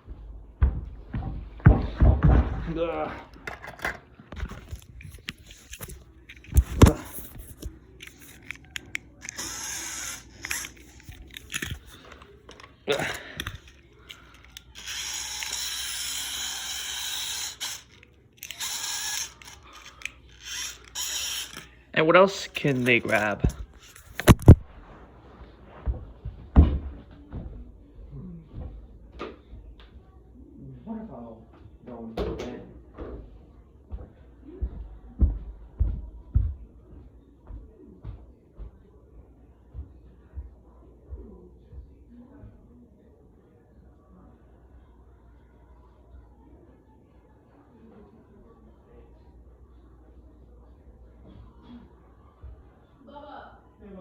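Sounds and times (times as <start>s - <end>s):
plastic toys clicking and knocking: 3.3s - 21.7s
hissing whirr: 8.0s - 11.8s, 14.4s - 21.8s.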